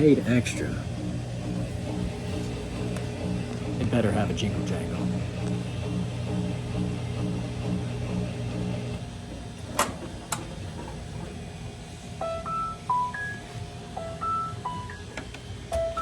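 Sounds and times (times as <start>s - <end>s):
washing machine humming: 0.0s - 16.0s
electronic beep tune: 12.2s - 13.4s.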